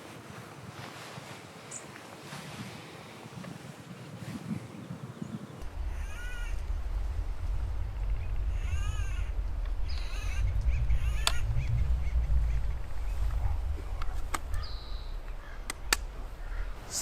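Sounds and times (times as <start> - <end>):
low wind rumble on microphone: 0.0 - 17.0
woodpeckers calling raucously: 8.5 - 13.0, 14.0 - 17.0.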